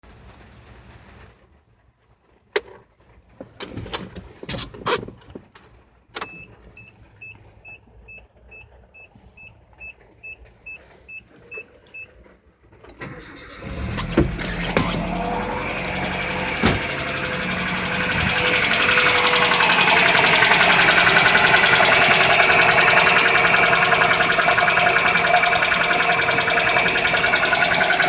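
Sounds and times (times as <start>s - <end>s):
engine cranking and starting: 9.5s - 28.0s
clunks: 12.7s - 28.0s
door thud: 16.6s - 17.0s.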